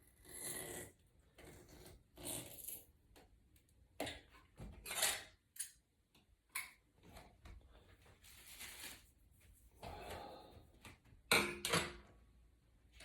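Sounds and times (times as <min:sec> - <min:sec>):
rustling scrape: 0:08.1 - 0:09.7.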